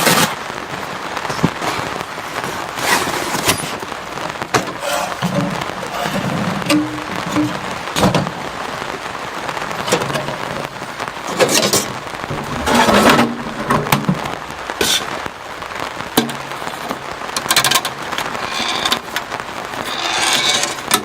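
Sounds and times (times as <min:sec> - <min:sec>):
steady rainfall: 0:00.0 - 0:21.0
sharp taps and rustles: 0:16.1 - 0:21.0.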